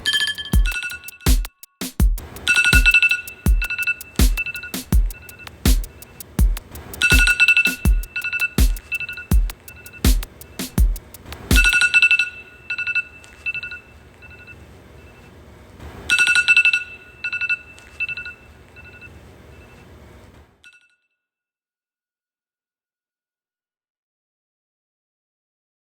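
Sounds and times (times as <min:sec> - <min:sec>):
high electronic alarm beeps: 0:00.0 - 0:01.6, 0:02.5 - 0:06.2, 0:07.0 - 0:10.3.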